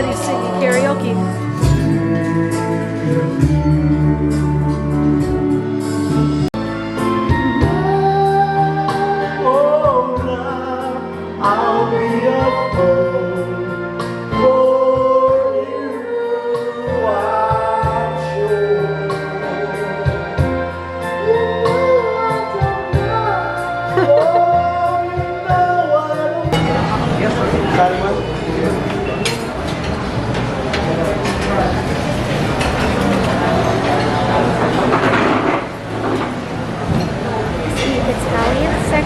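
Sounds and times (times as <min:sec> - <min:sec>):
person singing: 0:00.0 - 0:26.6
instrumental backing: 0:00.0 - 0:39.0.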